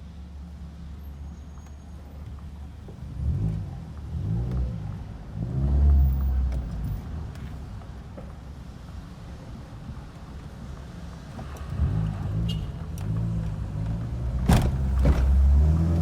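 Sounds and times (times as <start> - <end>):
car engine revving in cabin: 13.1 - 16.0.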